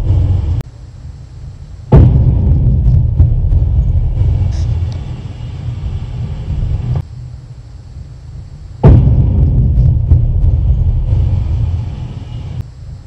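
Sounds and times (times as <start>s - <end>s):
rumbling explosions: 0.0s - 0.6s, 1.9s - 7.0s, 8.8s - 12.6s
sharp crack of blast: 1.9s - 6.9s, 8.8s - 12.6s.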